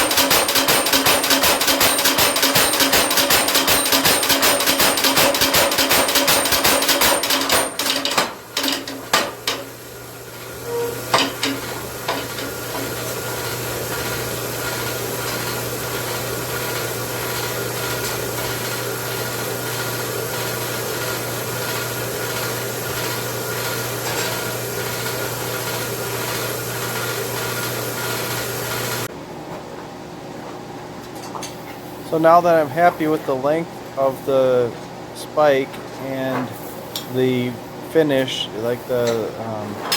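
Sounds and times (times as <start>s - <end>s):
power hammer striking metal: 0.0s - 9.7s, 10.7s - 18.8s.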